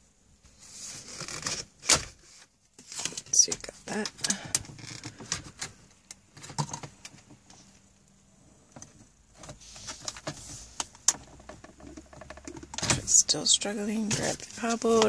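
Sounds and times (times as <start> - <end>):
clicks knocks and scraping: 8.7 - 13.4.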